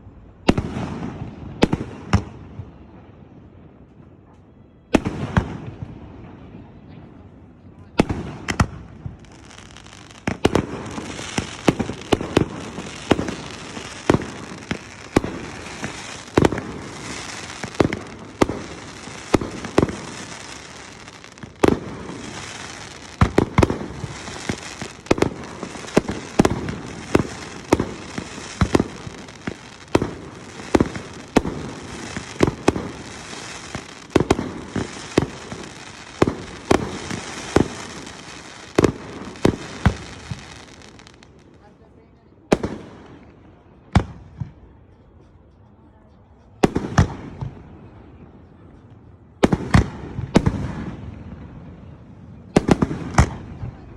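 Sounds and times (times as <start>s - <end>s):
fireworks bangs: 0.0s - 41.8s, 46.6s - 53.9s
fireworks crackling hiss: 8.1s - 41.7s.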